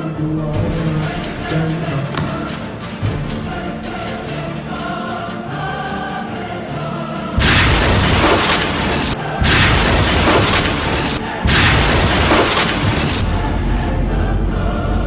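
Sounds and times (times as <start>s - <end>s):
background music: 0.0s - 12.3s
explosion roar: 7.4s - 13.3s.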